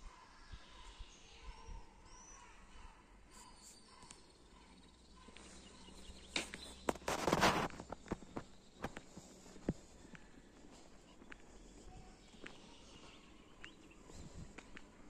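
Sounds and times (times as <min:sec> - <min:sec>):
faint birds chirping: 0:00.0 - 0:15.0
rustling scrape: 0:06.9 - 0:08.0.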